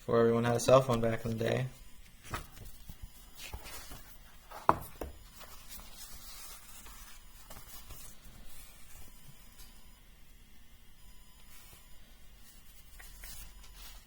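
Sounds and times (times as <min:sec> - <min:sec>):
notebook pages turning: 0:02.2 - 0:08.9, 0:12.4 - 0:14.0.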